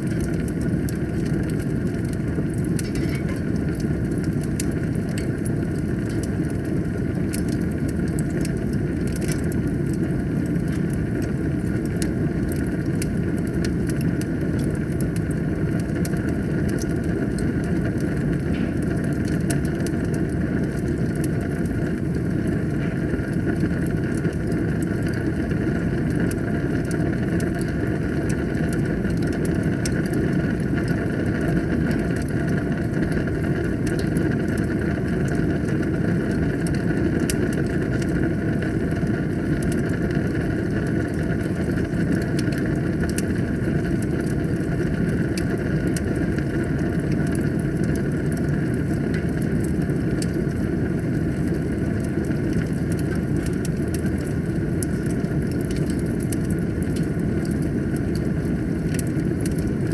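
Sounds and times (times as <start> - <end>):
fire rumbling: 0.0 - 59.9
wood crackling and popping: 0.0 - 59.9.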